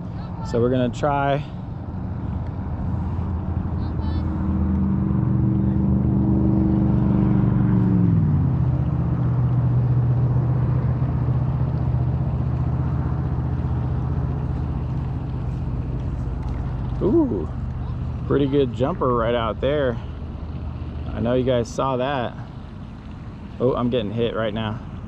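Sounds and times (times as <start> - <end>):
vehicle engine running: 0.0 - 25.0.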